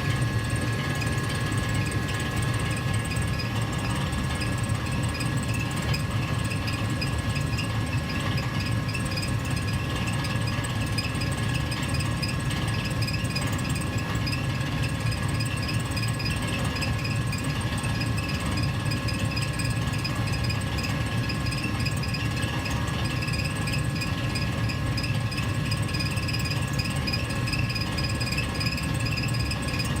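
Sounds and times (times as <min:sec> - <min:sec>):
gas furnace rumbling: 0:00.0 - 0:09.7.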